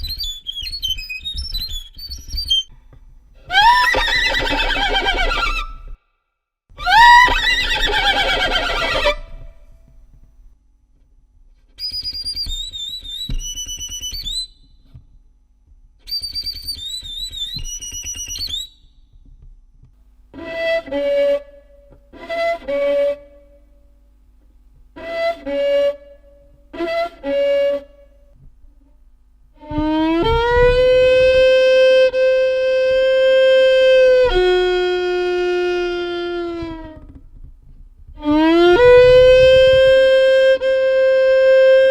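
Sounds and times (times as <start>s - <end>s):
violin imitating sounds: 3.4s - 6.0s, 6.8s - 9.7s, 29.6s - 37.2s, 38.1s - 41.9s.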